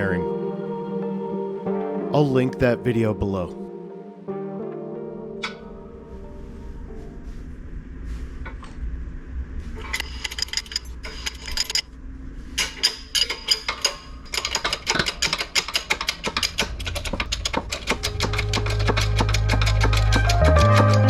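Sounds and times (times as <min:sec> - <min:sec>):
steady low hum: 0:05.0 - 0:13.2
hand tools clicking on metal: 0:12.6 - 0:21.0.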